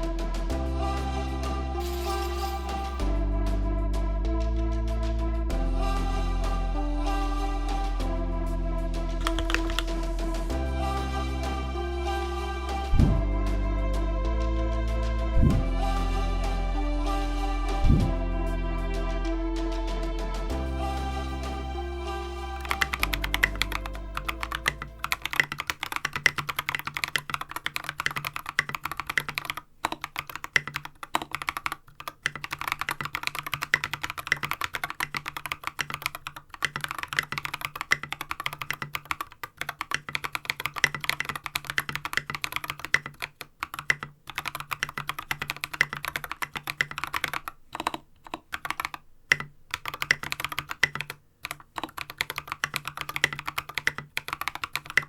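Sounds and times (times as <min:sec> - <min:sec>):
mechanical keyboard typing: 0:09.2 - 0:10.0, 0:20.5 - 0:55.0.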